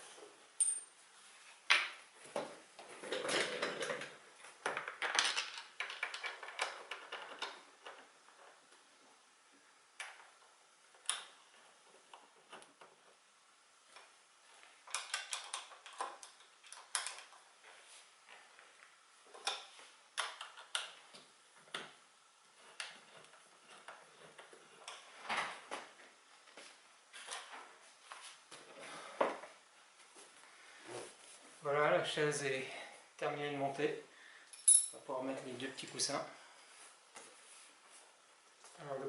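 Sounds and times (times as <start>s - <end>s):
metal hardware and tools clinking: 0.6s - 0.9s, 34.5s - 35.0s.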